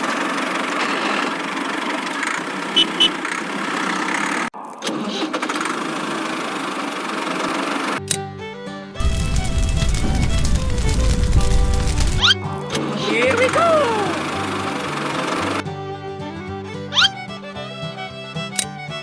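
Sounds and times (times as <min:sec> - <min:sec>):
high beeps: 0:02.8 - 0:03.1
musical tones: 0:08.0 - 0:19.0.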